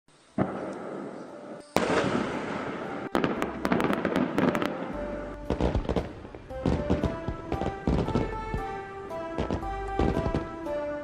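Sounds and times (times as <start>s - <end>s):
music: 0.1s - 11.0s
firecracker-like cracks and pops: 1.8s - 8.4s, 9.4s - 10.5s.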